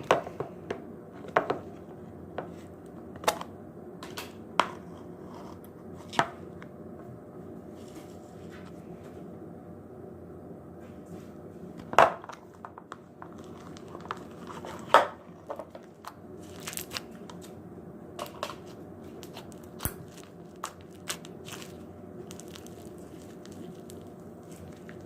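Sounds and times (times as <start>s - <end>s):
slime crackling and popping: 16.4s - 17.4s, 19.2s - 25.0s
slime squished by hand: 19.2s - 25.0s.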